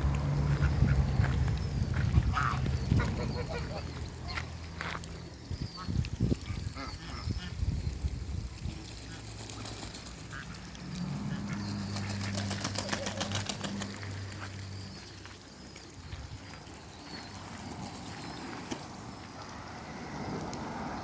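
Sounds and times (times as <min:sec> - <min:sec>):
ducks quacking: 0:00.5 - 0:01.4, 0:02.0 - 0:04.5, 0:05.7 - 0:07.7, 0:09.0 - 0:12.1
geese honking: 0:02.2 - 0:04.4, 0:05.7 - 0:07.6, 0:09.0 - 0:11.9.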